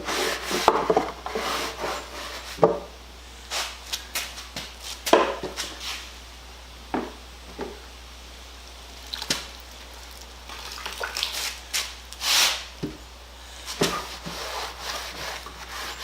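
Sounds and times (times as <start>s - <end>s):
damp cloth wiping wood: 13.7s - 16.0s.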